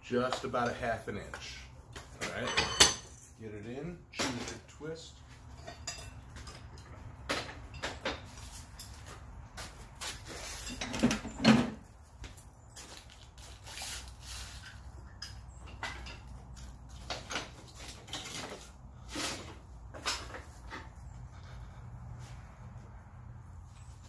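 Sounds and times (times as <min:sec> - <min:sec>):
metal clanks and knocks: 0:02.0 - 0:03.2, 0:05.4 - 0:09.2, 0:15.2 - 0:21.1.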